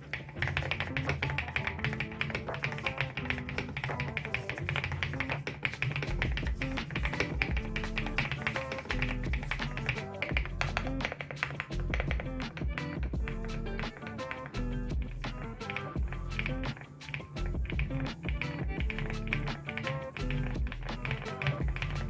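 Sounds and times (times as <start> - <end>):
background music: 0.0 - 22.0
mechanical keyboard typing: 0.1 - 12.2.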